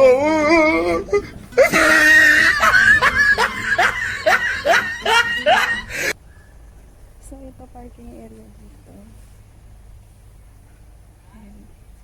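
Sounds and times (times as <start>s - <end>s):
person shrieking: 0.0s - 6.1s
high-pitched laughter: 0.0s - 6.2s.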